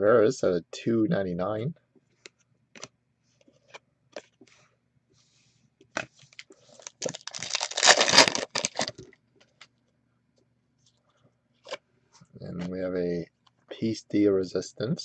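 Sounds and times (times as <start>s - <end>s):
packaging crinkling: 6.3s - 9.1s.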